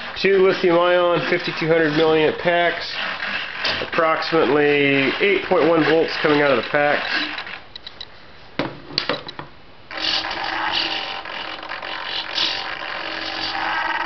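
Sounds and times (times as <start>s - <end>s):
servos clicking and buzzing: 0.0s - 8.1s, 9.9s - 14.0s.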